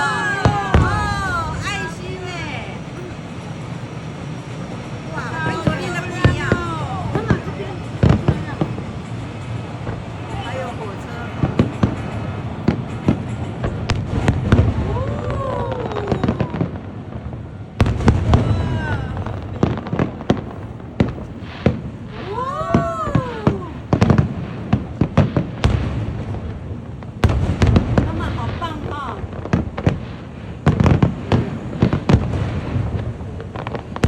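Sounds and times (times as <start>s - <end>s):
fireworks bangs and crackles: 0.0s - 34.0s
steady low rumble: 0.0s - 34.0s.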